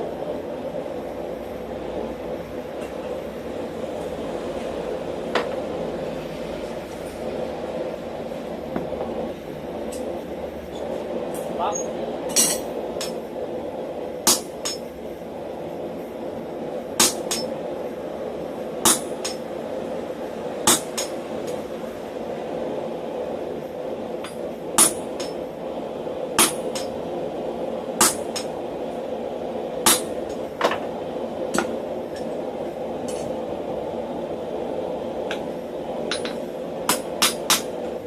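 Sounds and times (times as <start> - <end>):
steady hum: 0.0 - 38.0
hammer striking steel on anvil: 12.3 - 13.2, 14.3 - 14.9, 17.0 - 17.5, 18.8 - 19.4, 20.7 - 21.2, 24.2 - 25.4, 26.4 - 27.0, 28.0 - 28.6, 29.8 - 30.8, 36.1 - 37.7.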